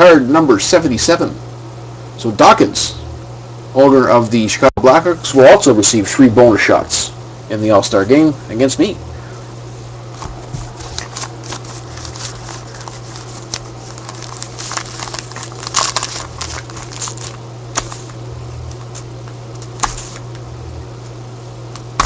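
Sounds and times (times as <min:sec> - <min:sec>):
steady low hum: 0:00.0 - 0:22.0
foil wrapper crinkling: 0:10.2 - 0:20.3.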